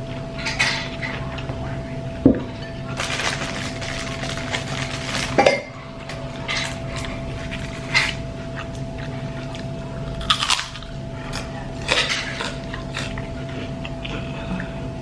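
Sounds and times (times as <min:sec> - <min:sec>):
steady low hum: 0:00.0 - 0:15.0
dishes and cutlery clinking: 0:05.4 - 0:08.2, 0:11.3 - 0:12.6.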